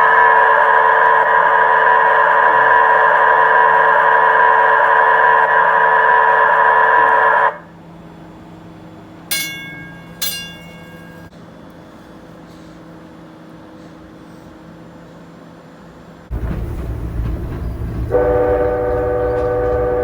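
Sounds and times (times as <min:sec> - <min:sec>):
warning gong ringing: 0:09.3 - 0:11.3, 0:18.1 - 0:20.0
train horn multi-tone chord: 0:18.1 - 0:20.0.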